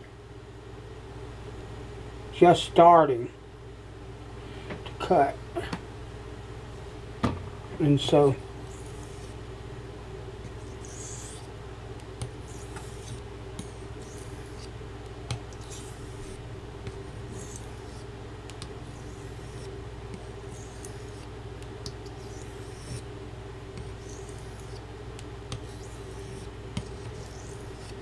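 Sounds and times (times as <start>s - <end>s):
knife scraping on sharpening stone: 10.6s - 11.5s, 12.5s - 14.7s, 15.6s - 16.4s, 17.3s - 18.1s, 18.8s - 21.3s, 22.1s - 23.0s, 23.9s - 24.8s, 25.6s - 28.0s.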